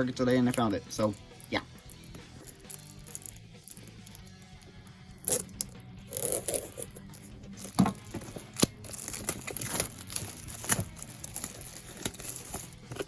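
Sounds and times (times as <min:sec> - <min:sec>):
plastic shrink wrap crinkling: 0:07.6 - 0:13.0.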